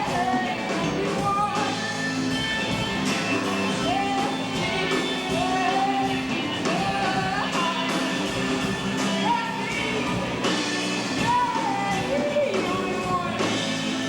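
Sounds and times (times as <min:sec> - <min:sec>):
rock band playing: 0:00.0 - 0:14.0
sliding lead melody: 0:00.0 - 0:14.0
steady drum beat: 0:00.0 - 0:14.0.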